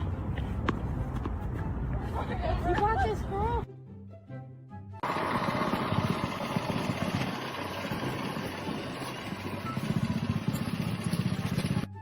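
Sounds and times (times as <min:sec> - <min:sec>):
rough pulsing engine under load: 0:05.0 - 0:12.0.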